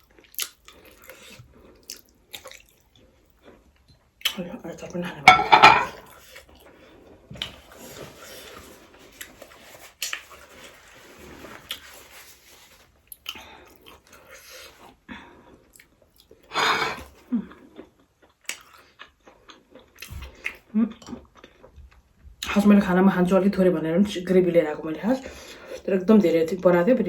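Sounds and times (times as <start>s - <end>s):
person chewing food: 0.0s - 4.3s, 17.5s - 22.0s.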